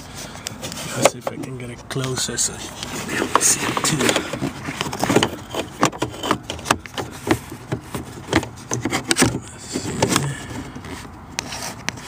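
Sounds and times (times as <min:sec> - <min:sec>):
camera handling knocks and rubbing: 0:02.7 - 0:12.0.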